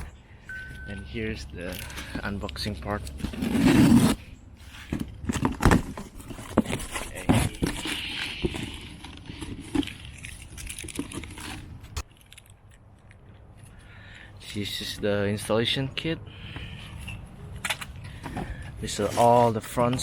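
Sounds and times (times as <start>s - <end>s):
packing material rustling: 5.4s - 12.4s.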